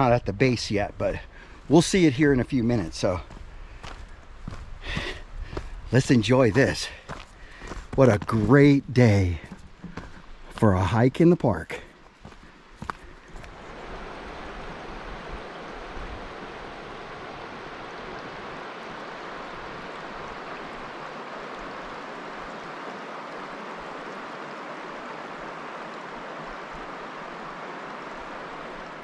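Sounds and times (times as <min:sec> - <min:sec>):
river water rushing: 0:11.7 - 0:29.0.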